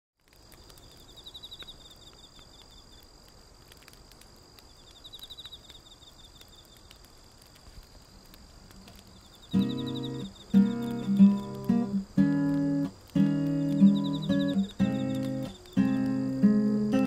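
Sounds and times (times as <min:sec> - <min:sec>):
campfire crackling and popping: 0:00.2 - 0:17.0
insects trilling: 0:00.2 - 0:17.0
high-pitched insect drone: 0:09.5 - 0:17.0.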